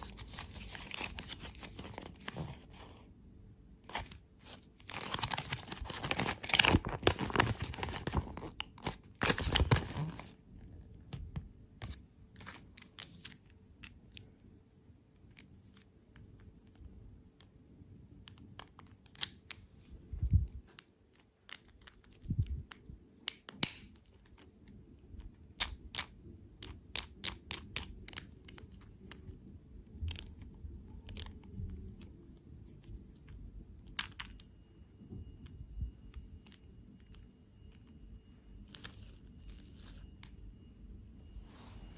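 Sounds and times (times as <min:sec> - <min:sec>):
close crinkling and crackling: 0:00.0 - 0:03.1, 0:03.8 - 0:11.2.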